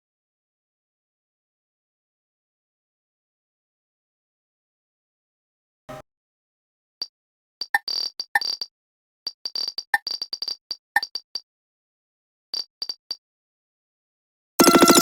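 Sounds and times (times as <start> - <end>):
electronic blips and clicks: 7.6 - 8.7, 9.4 - 11.2, 14.6 - 15.0
loud synthetic burst: 14.6 - 15.0.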